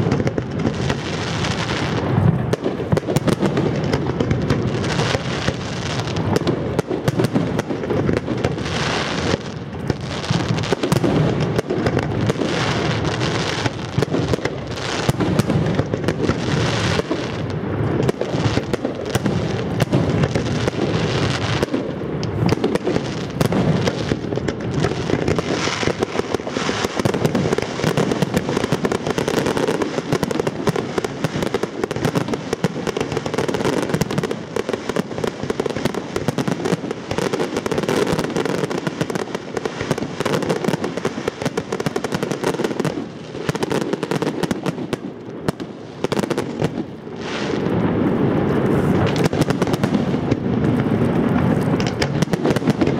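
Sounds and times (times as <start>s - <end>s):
fireworks bangs: 0.0s - 52.9s.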